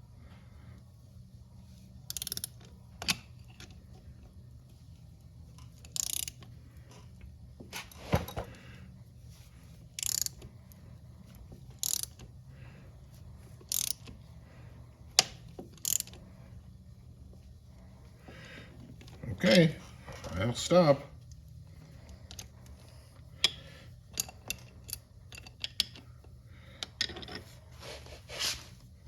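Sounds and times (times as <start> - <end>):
ratchet wrench clicking: 2.1 - 3.8, 5.6 - 6.5, 10.0 - 12.3, 13.6 - 14.2, 15.2 - 16.3, 22.3 - 26.0
sharp metal clicks: 13.7 - 14.1.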